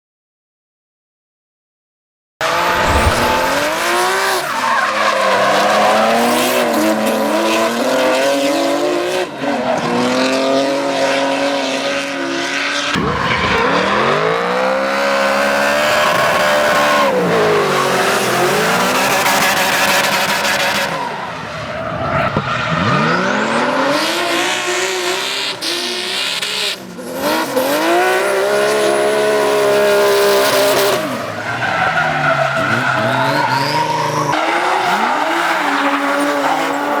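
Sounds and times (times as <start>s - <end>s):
car engines revving hard: 2.4s - 37.0s
tyre squeal and skidding: 2.5s - 7.6s, 29.4s - 37.0s.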